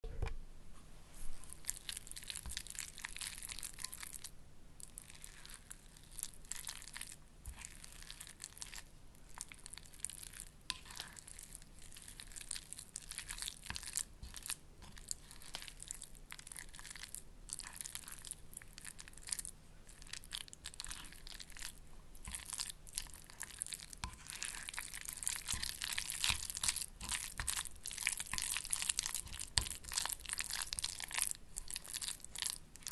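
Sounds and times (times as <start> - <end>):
sticky mixture being stirred: 1.2 - 32.9.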